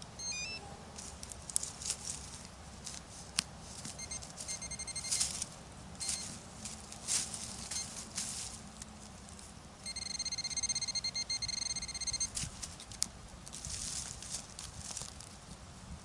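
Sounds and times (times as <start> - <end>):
metal detector high-pitched tone: 0.2 - 0.7, 4.0 - 5.4, 6.0 - 6.3, 9.8 - 12.4
rustling in leaf litter: 1.0 - 4.5, 5.1 - 9.6, 12.3 - 15.9.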